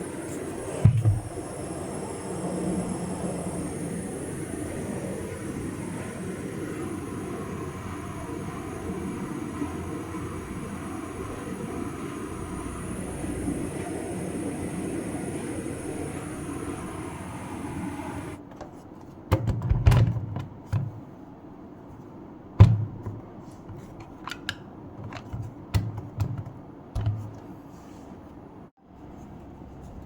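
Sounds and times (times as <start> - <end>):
charger cooling fan hissing: 0.0 - 18.4.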